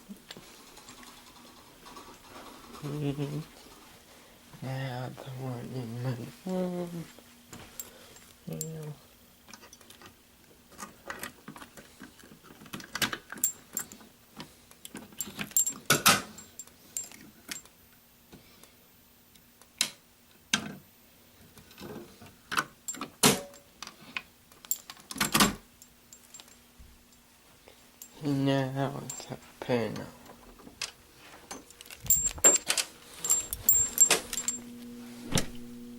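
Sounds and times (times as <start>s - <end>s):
keys jangling: 15.1s - 17.7s, 31.6s - 34.7s.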